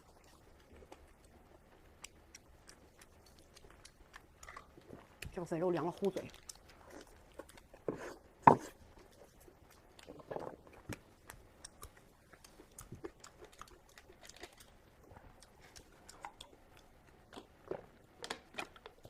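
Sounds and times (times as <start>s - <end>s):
close chewing mouth smacks: 0.0s - 5.4s, 6.1s - 7.9s, 8.9s - 19.0s.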